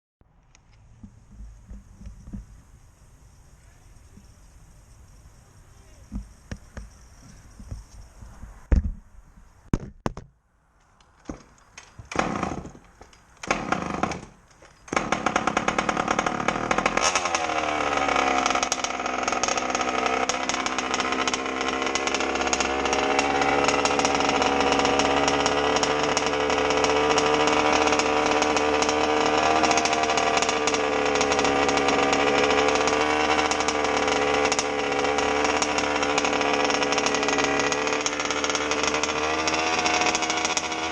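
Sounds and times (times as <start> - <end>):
two-stroke engine starting: 11.3 - 40.9.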